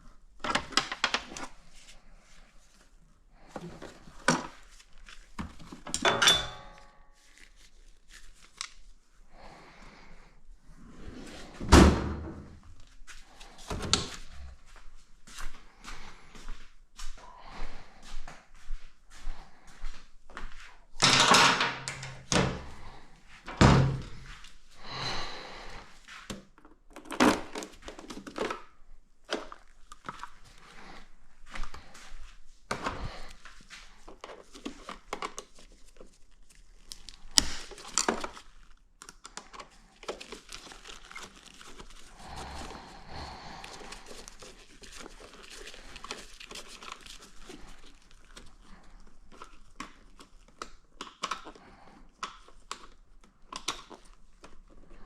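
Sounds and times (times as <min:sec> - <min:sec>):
rustling: 0:39.6 - 0:50.6.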